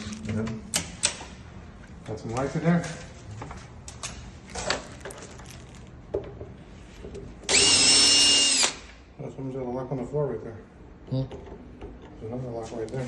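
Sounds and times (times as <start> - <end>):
power drill whining: 7.5 - 8.8.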